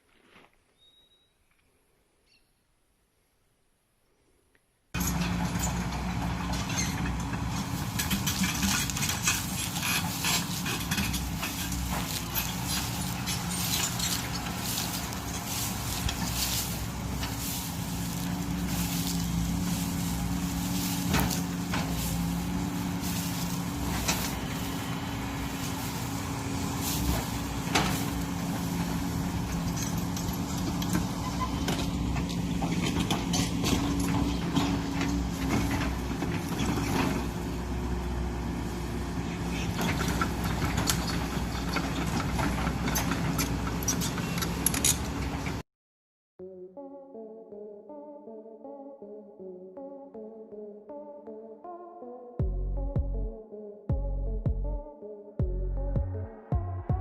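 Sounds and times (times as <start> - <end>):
excavator diesel engine running: 5.0 - 45.6.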